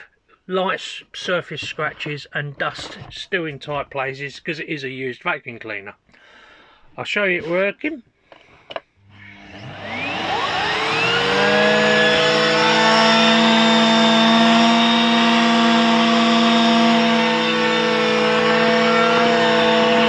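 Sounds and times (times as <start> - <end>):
vacuum cleaner motor running: 9.0 - 20.0.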